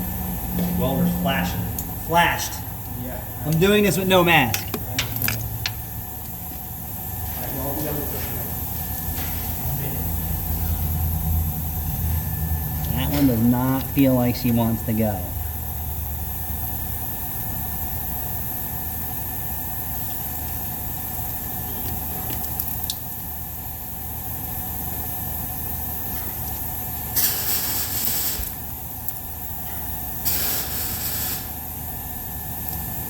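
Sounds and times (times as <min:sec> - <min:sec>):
spraying hisses: 0:27.1 - 0:28.7, 0:30.2 - 0:31.7.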